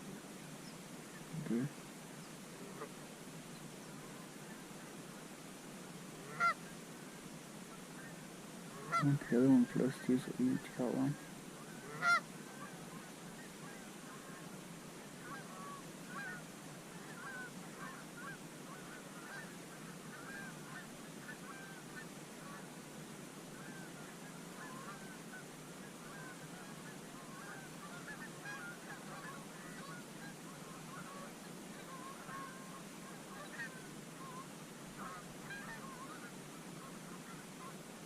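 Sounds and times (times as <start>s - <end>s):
geese honking: 2.6s - 3.0s, 6.2s - 6.8s, 7.7s - 22.8s, 23.5s - 37.8s.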